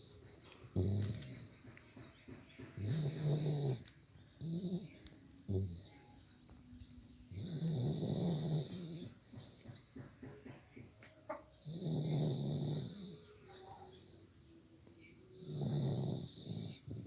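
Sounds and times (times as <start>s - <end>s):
person snoring: 2.8s - 4.9s, 7.4s - 9.1s, 11.7s - 13.2s.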